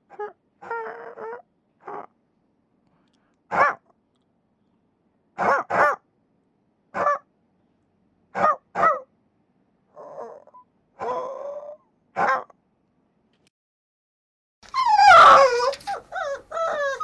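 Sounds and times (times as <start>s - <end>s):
puppy yipping: 14.6s - 17.0s.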